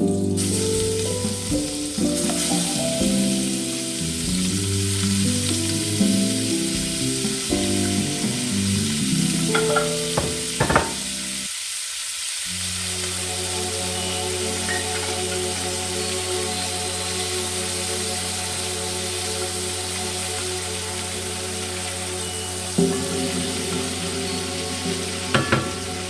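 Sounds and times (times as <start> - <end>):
background music: 0.0 - 11.5, 13.2 - 18.9, 22.6 - 26.0
food sizzling in a pan: 0.0 - 26.0.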